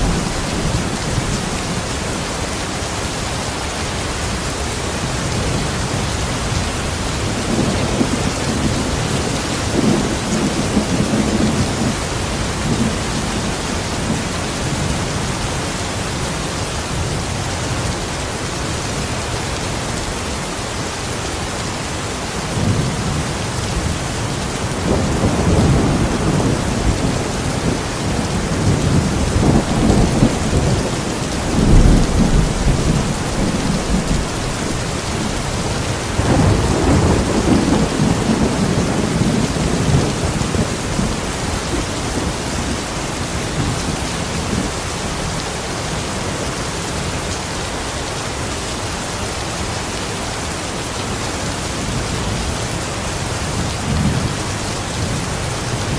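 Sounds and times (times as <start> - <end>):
rolling thunder: 0.0 - 2.3, 22.5 - 44.8
steady rain: 0.0 - 55.9.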